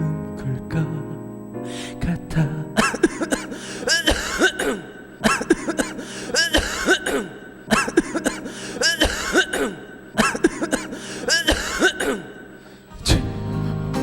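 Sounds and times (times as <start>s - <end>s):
man clearing throat: 2.8s - 12.5s.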